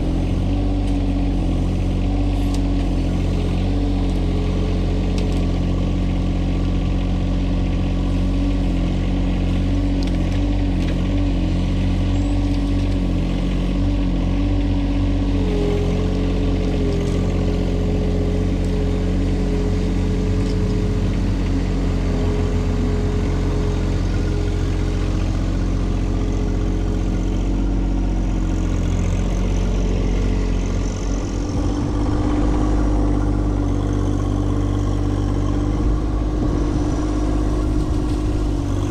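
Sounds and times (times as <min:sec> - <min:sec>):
tractor engine running: 0:00.0 - 0:38.9
high steady whine: 0:28.2 - 0:38.9.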